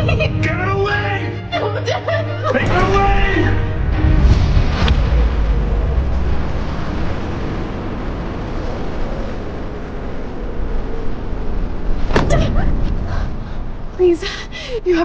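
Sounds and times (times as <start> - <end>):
loud rushing noise with rumble: 2.6 - 14.6.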